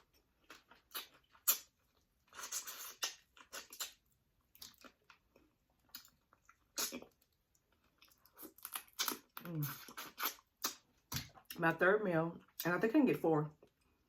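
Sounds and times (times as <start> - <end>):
wet chewing and smacking: 0.0 - 11.6.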